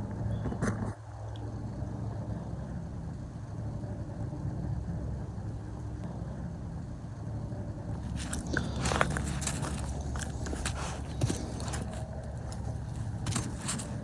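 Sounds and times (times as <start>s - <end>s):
low engine hum: 0.0s - 14.0s
short crackling sounds: 8.0s - 14.0s.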